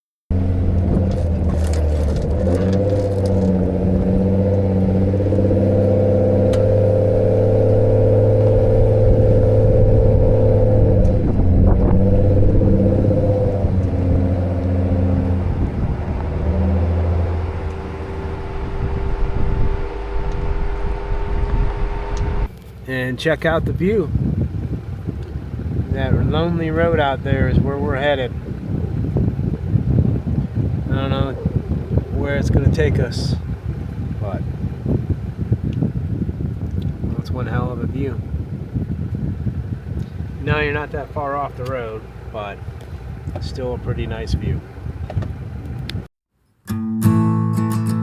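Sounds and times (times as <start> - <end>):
truck engine running: 0.3 - 46.1
knocks and rattles: 0.7 - 3.8.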